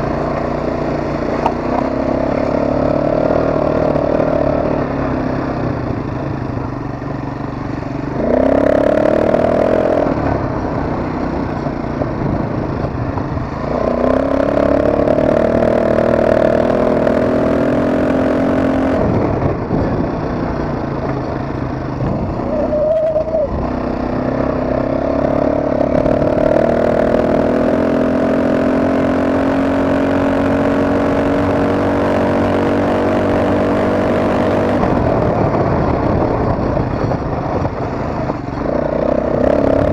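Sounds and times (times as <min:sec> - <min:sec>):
atv engine revving: 0:00.0 - 0:39.9.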